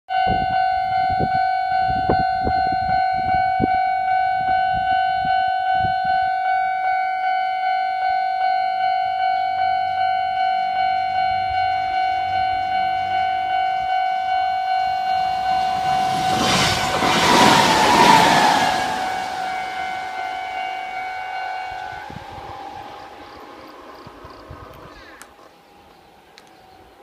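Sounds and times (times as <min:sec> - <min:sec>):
level-crossing warning bell: 0:00.1 - 0:27.0
train rumble: 0:09.9 - 0:27.0.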